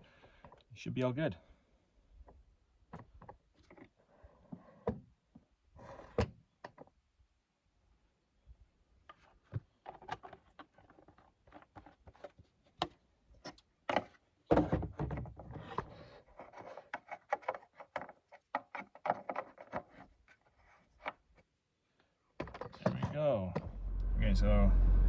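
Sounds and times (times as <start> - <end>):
heavy rumbling thud: 23.7 - 25.0.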